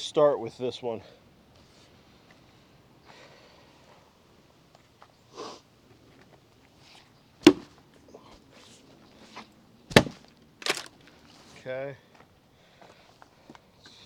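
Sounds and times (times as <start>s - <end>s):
axe striking wood: 7.4s - 7.7s, 9.9s - 10.9s.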